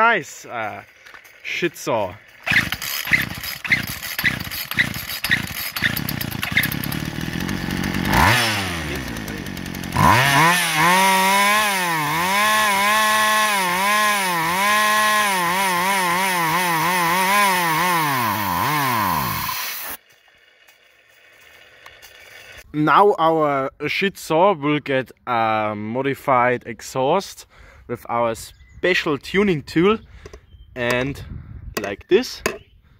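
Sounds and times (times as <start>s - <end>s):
chainsaw engine revving: 2.3s - 20.0s.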